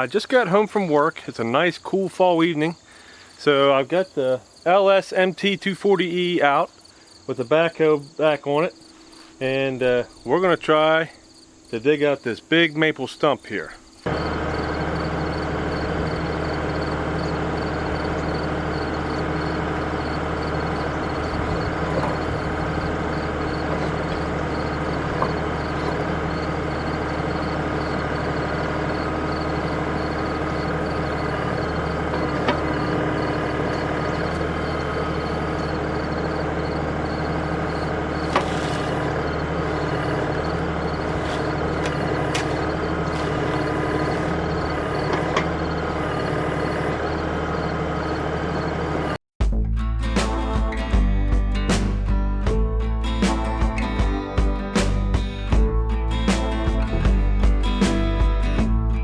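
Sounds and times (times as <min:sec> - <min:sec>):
tractor diesel engine running: 0:14.0 - 0:49.2, 0:49.8 - 0:59.0.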